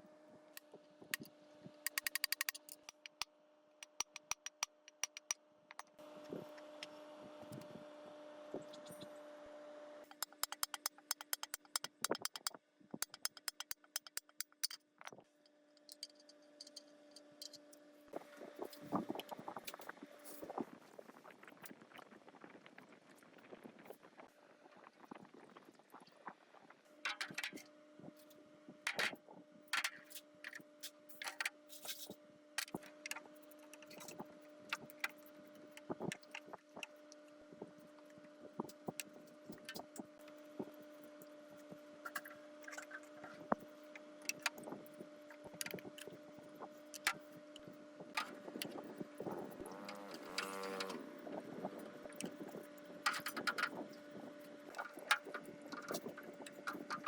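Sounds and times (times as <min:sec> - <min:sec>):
tools clicking and tapping on parts: 0:01.9 - 0:06.0, 0:10.0 - 0:15.2, 0:15.8 - 0:17.8, 0:27.1 - 0:27.6, 0:28.9 - 0:29.2.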